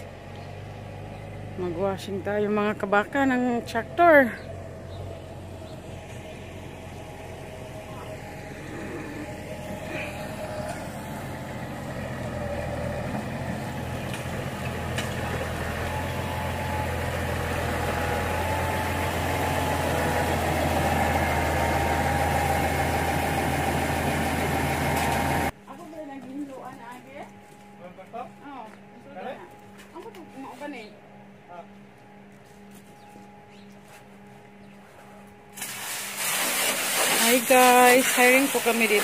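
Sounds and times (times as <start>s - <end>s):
tractor diesel engine running: 0.0s - 25.6s.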